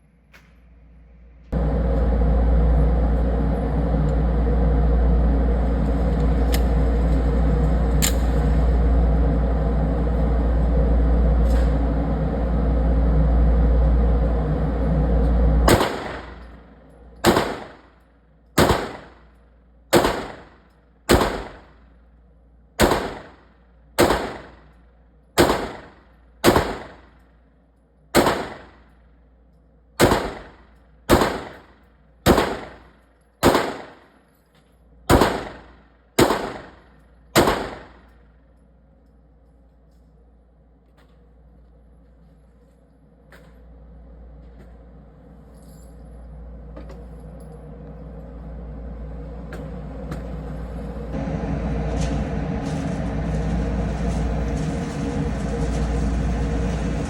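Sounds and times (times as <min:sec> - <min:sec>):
loud rushing noise with rumble: 0:01.5 - 0:17.9, 0:48.6 - 0:57.0
handgun shots: 0:17.2 - 0:17.8, 0:18.6 - 0:19.2, 0:20.0 - 0:20.5, 0:21.1 - 0:21.7, 0:22.8 - 0:23.4, 0:24.0 - 0:24.6, 0:25.4 - 0:27.0, 0:28.2 - 0:28.8, 0:30.0 - 0:31.7, 0:32.3 - 0:34.1, 0:35.1 - 0:38.1.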